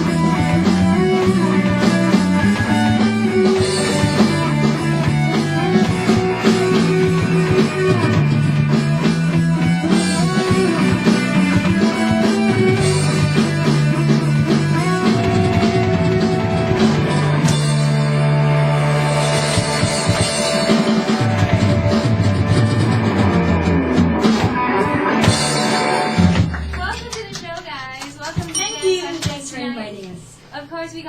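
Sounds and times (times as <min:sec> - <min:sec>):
electric guitars ringing: 0:00.0 - 0:27.1, 0:28.4 - 0:29.9
drum kit: 0:00.0 - 0:29.6.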